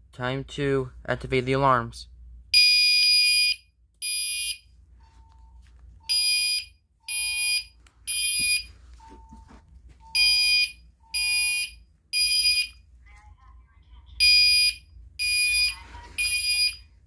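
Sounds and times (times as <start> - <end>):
faint steady beeping tone: 2.6 - 12.9, 14.2 - 17.0
fire alarm horn blasts: 10.1 - 12.8, 14.2 - 16.8.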